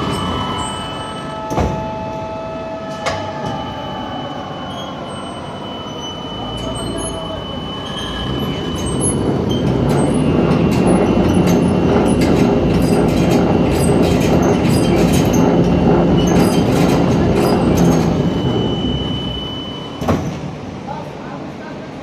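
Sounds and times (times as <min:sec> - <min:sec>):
high whine: 0:00.0 - 0:20.1
crane hoist drum rumbling drone: 0:00.0 - 0:20.8
rapid irregular clicks and knocks: 0:09.7 - 0:18.1.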